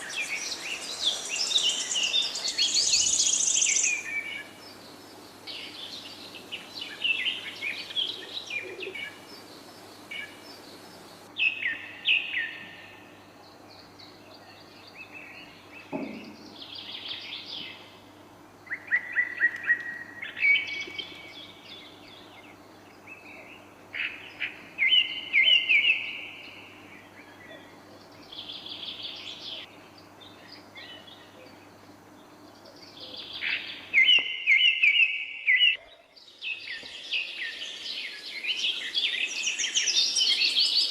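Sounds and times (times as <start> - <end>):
small birds chirping: 0.0 - 18.0, 18.7 - 40.9
soft knock: 15.9 - 16.4.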